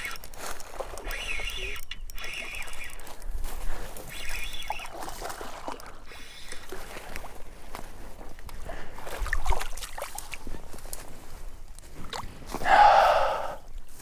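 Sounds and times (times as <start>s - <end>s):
bird calling: 1.0s - 3.1s, 4.0s - 5.2s.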